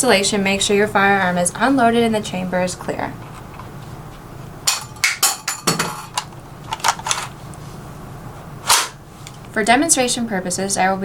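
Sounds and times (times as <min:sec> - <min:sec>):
faint low hum: 0:00.0 - 0:11.0
rifle metallic clacks: 0:08.7 - 0:09.0.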